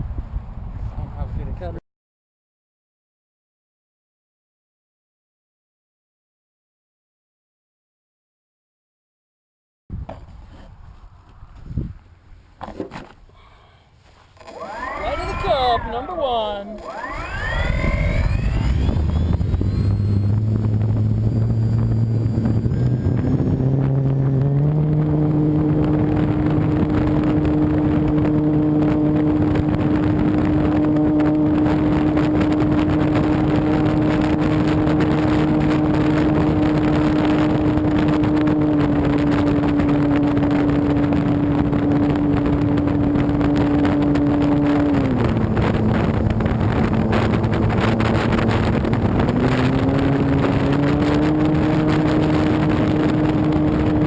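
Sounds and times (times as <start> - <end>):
electric motor and propeller whining: 13.4 - 54.0.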